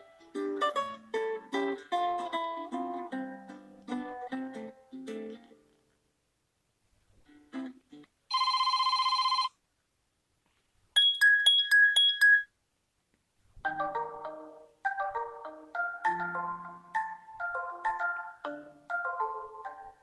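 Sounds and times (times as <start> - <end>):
marimba-style ringtone melody: 11.0 - 12.5, 13.7 - 20.0.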